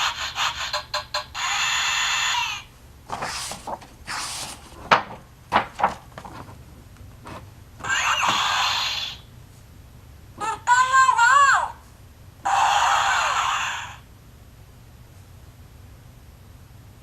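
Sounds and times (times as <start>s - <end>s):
electronic toy sound effects: 0.1s - 2.7s, 7.8s - 9.2s, 12.5s - 14.0s.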